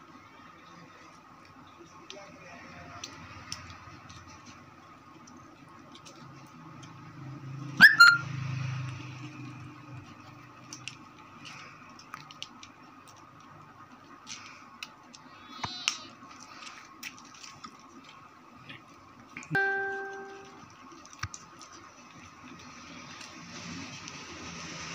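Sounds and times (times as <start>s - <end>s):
faint electrical hum: 9.5s - 24.4s.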